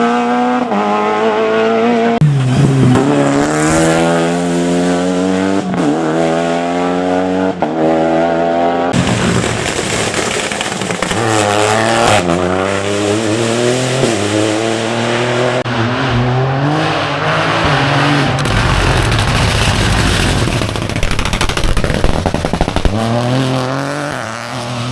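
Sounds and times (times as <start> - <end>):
car accelerating through gears: 0.0 - 9.0
rally car engines revving: 0.0 - 24.9.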